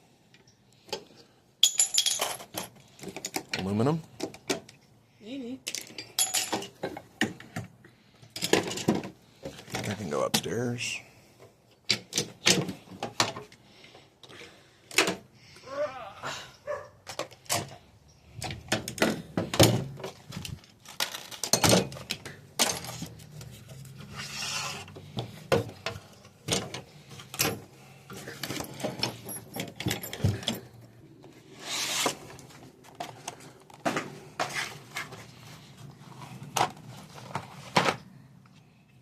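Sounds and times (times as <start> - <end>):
scraping and rubbing: 22.8 - 25.4, 31.3 - 33.3.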